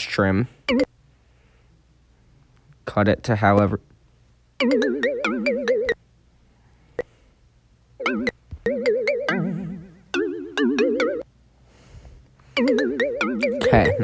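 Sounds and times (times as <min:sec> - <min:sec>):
wobbling synth voice effect: 0:08.0 - 0:11.2, 0:12.7 - 0:14.0.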